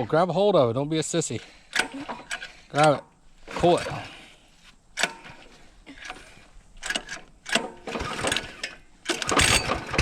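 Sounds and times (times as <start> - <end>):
recoil pull-starter pulls: 5.0 - 10.0.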